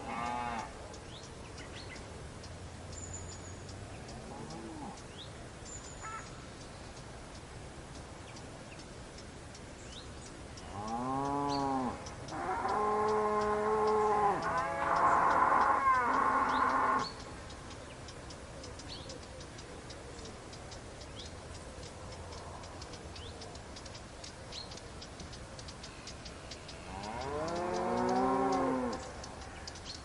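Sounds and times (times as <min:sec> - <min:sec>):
cow mooing: 0:00.0 - 0:00.7, 0:04.2 - 0:05.0, 0:10.6 - 0:17.1, 0:26.8 - 0:29.0
faint steady high ticking: 0:00.0 - 0:30.0.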